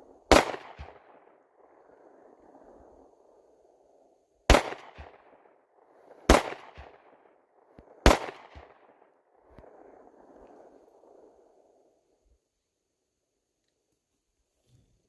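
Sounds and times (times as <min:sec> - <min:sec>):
pistol shots with echo: 0:00.2 - 0:02.6, 0:04.5 - 0:10.3.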